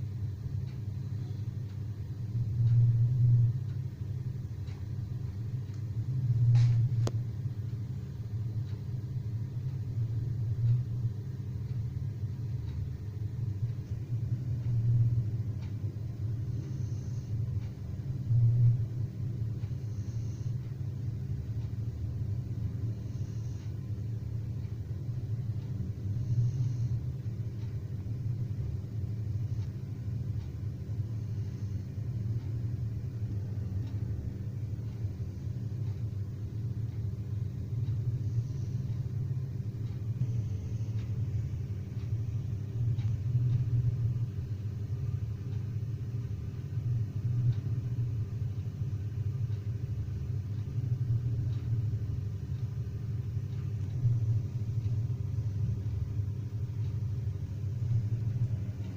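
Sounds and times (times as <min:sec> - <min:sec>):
steady low drone: 0:00.0 - 0:58.9
faint breathing: 0:16.2 - 0:17.7, 0:19.6 - 0:21.7, 0:22.5 - 0:24.1, 0:25.2 - 0:47.8.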